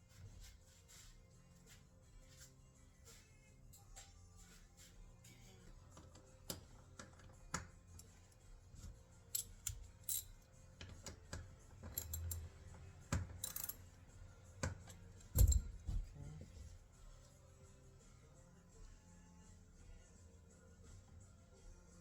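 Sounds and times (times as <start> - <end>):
trim pieces and tools clinking: 6.0 - 13.9.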